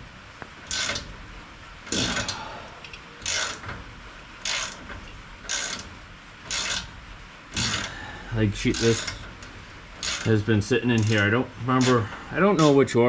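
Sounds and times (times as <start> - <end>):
ratchet wrench clicking: 0.6 - 1.1, 1.9 - 2.5, 3.2 - 3.7, 4.4 - 5.9, 6.5 - 6.9, 7.6 - 8.0, 8.7 - 12.0.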